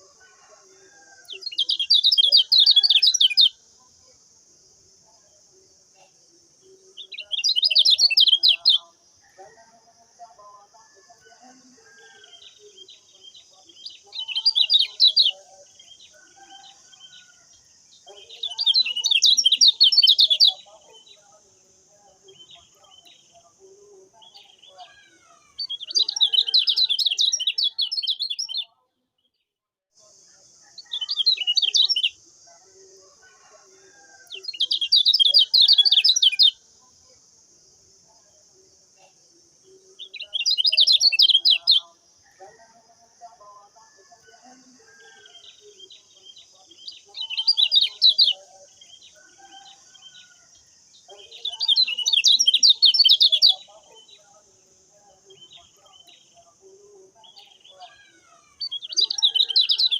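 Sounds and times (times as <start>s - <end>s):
faint bird chirps: 0.0s - 4.2s, 5.0s - 29.5s, 30.3s - 37.2s, 38.0s - 59.9s
bird twittering: 7.0s - 8.9s, 40.0s - 41.9s.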